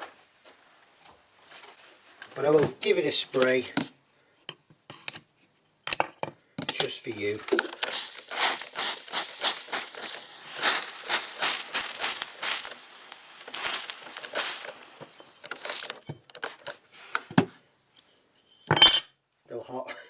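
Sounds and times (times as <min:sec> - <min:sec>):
water sizzling on hot metal: 0:07.8 - 0:16.7.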